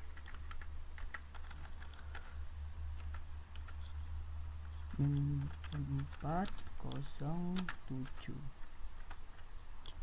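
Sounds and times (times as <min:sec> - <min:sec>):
typing on a keyboard: 0:00.0 - 0:02.4, 0:03.0 - 0:03.8, 0:04.9 - 0:08.4
steady low hum: 0:00.0 - 0:10.0.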